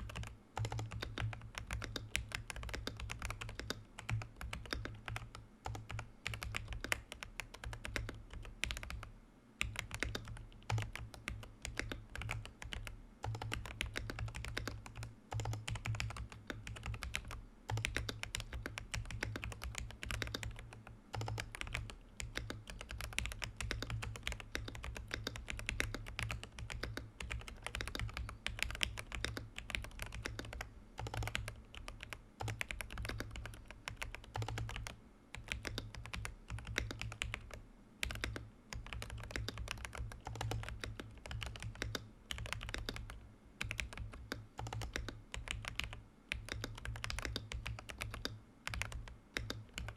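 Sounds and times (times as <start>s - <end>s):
fast typing on mechanical keyboard: 0.0s - 49.9s.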